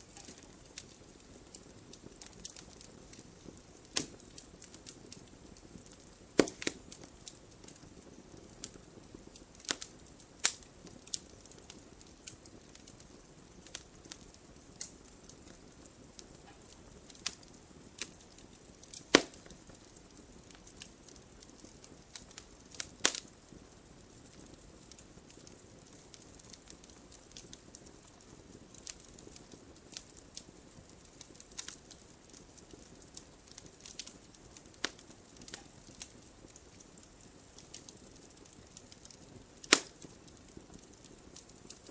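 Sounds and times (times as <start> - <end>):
soft steady hiss: 0.0 - 41.9
wood fire crackling and popping: 0.0 - 41.9.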